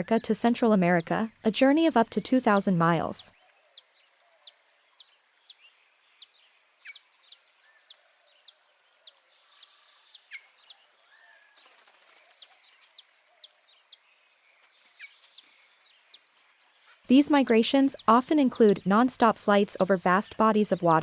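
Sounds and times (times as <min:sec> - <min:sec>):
bird chip calls: 0:00.0 - 0:03.2, 0:06.2 - 0:11.6, 0:15.0 - 0:21.0
softer bird calls: 0:00.0 - 0:21.0.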